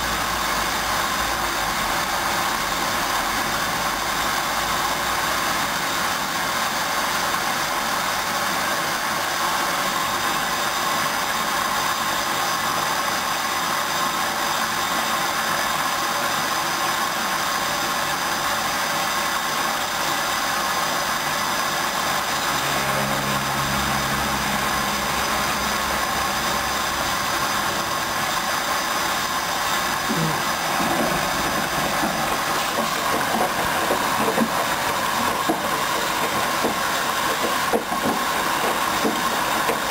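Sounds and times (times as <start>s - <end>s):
washing machine hissing: 0.0s - 39.9s
low hum: 22.3s - 36.8s.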